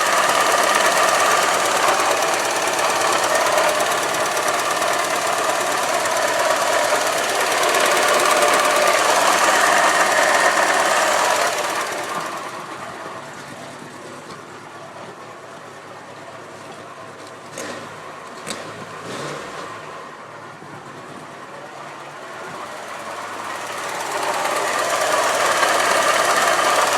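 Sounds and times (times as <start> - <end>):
car engine knocking and rattling: 0.0 - 15.5, 21.1 - 26.9.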